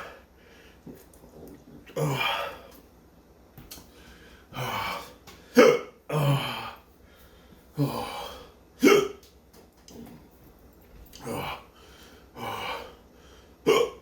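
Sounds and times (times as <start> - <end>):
heavy breaths: 3.8 - 5.6, 11.1 - 13.6
man hiccupping: 4.6 - 6.8, 7.8 - 9.3, 13.6 - 14.0.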